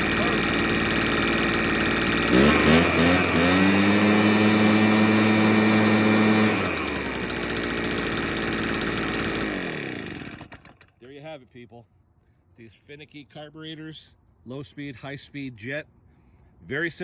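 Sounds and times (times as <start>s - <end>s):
blower two-stroke engine revving: 0.0s - 10.9s.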